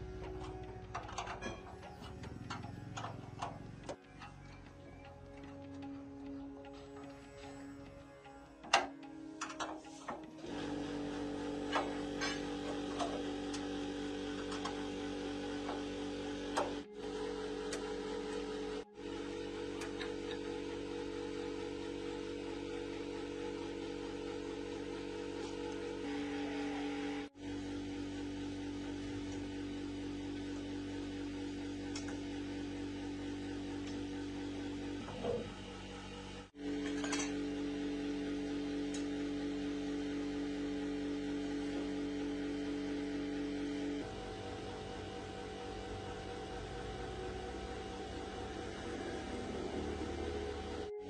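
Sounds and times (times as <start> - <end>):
sustained background music: 0.0 - 27.3, 44.1 - 51.0
small electric motor humming: 0.0 - 51.0.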